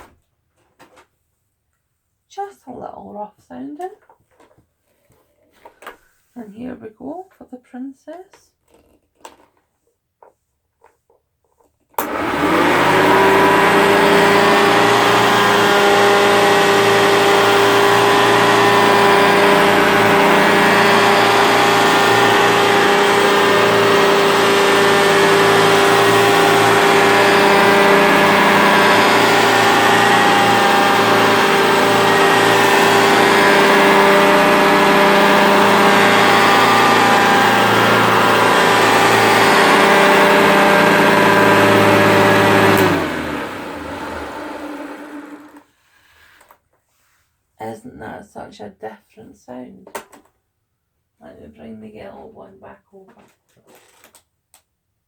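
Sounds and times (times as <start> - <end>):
vacuum cleaner motor running: 12.0 - 45.7.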